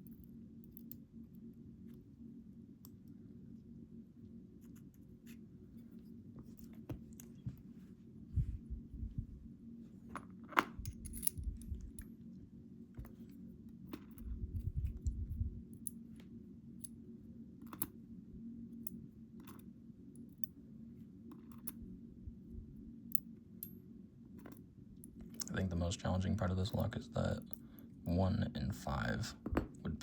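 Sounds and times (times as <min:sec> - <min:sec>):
low hum: 0:00.0 - 0:30.0
small metal lock parts clicking: 0:10.5 - 0:12.1, 0:21.3 - 0:21.8.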